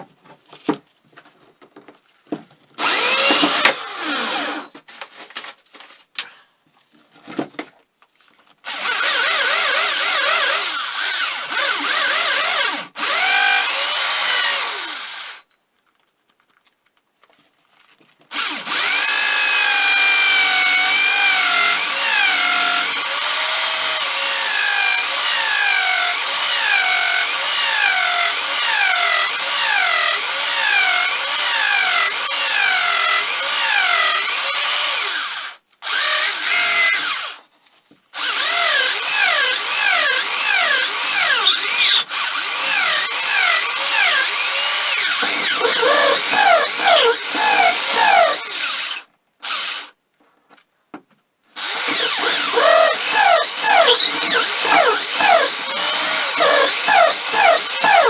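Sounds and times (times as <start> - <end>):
electric power tool running: 2.8 - 4.7, 51.6 - 58.0.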